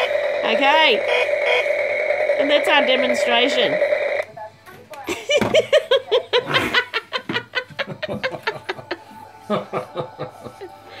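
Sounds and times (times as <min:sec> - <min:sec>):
person laughing: 0:05.1 - 0:11.0.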